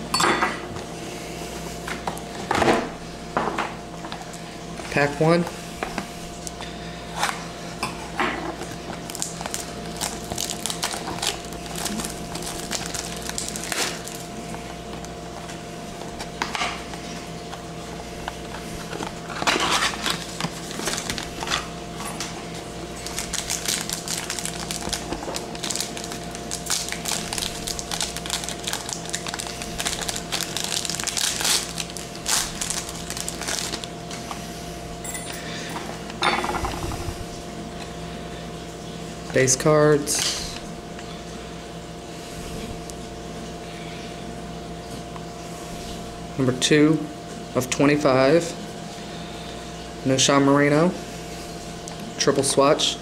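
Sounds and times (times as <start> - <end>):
packaging crinkling: 8.6 - 34.2
card pack tearing open: 9.0 - 14.3, 18.9 - 21.7, 23.0 - 33.9.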